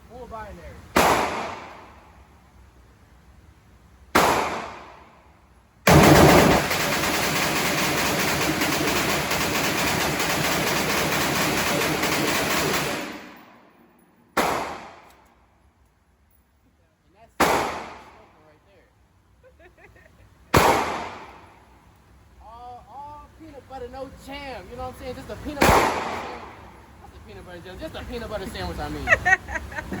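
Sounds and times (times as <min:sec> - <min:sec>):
single gunshots: 0:00.9 - 0:02.0, 0:04.1 - 0:05.0, 0:05.9 - 0:07.2, 0:11.4 - 0:13.6, 0:14.3 - 0:15.2, 0:17.4 - 0:18.2, 0:20.5 - 0:21.6, 0:25.6 - 0:26.7
rapid gunfire: 0:01.0 - 0:01.8, 0:04.2 - 0:04.9, 0:05.9 - 0:13.6, 0:14.4 - 0:15.1, 0:20.6 - 0:21.5, 0:25.6 - 0:26.6.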